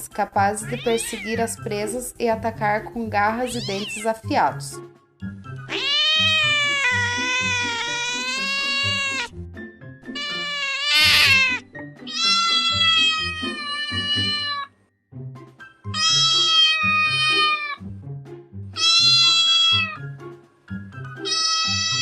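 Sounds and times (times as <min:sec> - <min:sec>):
background music: 0:00.0 - 0:22.0
cat meowing: 0:00.6 - 0:01.5, 0:03.4 - 0:04.1, 0:05.7 - 0:09.3, 0:10.1 - 0:14.7, 0:15.9 - 0:17.8, 0:18.8 - 0:20.1, 0:21.2 - 0:22.0.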